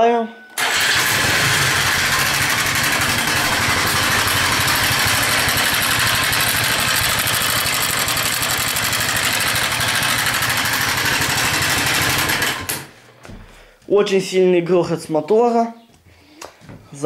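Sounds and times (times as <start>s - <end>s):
scooter engine idling with clatter: 0.6s - 12.9s.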